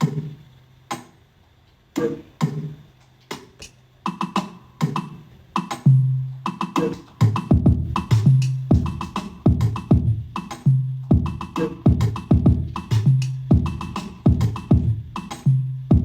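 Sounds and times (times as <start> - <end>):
percussion loop: 0.0 - 1.2, 2.0 - 16.0
deep low drum hits: 7.5 - 10.4, 11.1 - 15.0.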